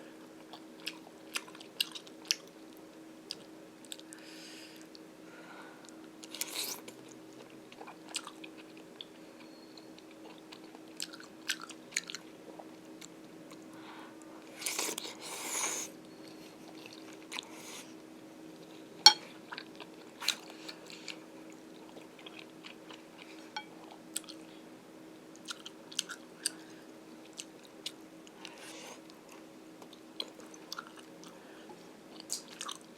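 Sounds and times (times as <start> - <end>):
steady low hum: 0.0 - 32.9
chewing food: 0.5 - 4.2, 6.2 - 13.7, 25.3 - 32.9.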